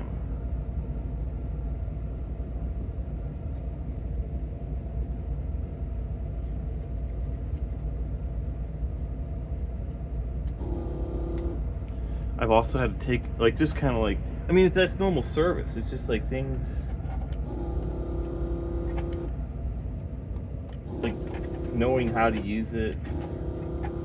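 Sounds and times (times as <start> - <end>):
desoldering vacuum pump humming: 10.4 - 24.0.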